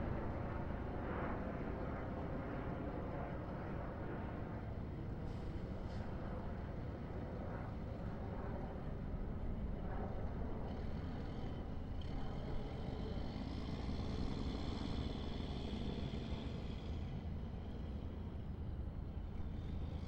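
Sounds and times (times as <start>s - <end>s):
rumble of passing vehicles: 8.7s - 20.0s.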